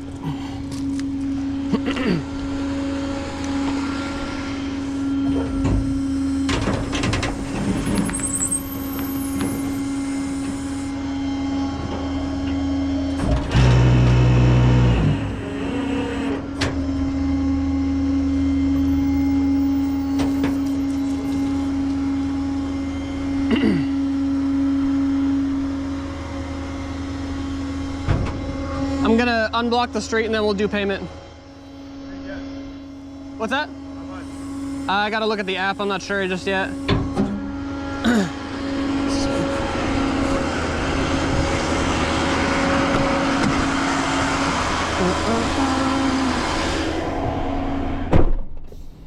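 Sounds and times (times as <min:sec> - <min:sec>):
vehicle engine running: 0:00.0 - 0:48.1.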